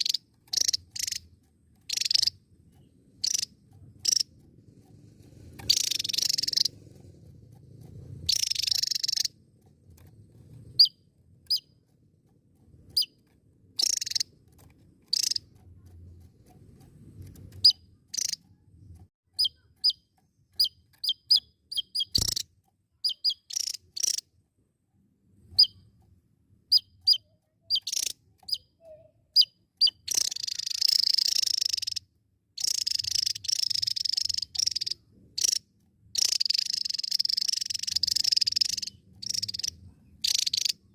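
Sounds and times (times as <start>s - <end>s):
bird chirping and trilling: 0.0s - 4.4s, 5.6s - 6.9s, 8.2s - 9.4s, 10.6s - 11.9s, 12.9s - 15.7s, 17.2s - 18.5s, 19.3s - 24.3s, 25.4s - 26.0s, 26.6s - 40.9s
sharp click: 7.4s - 24.3s.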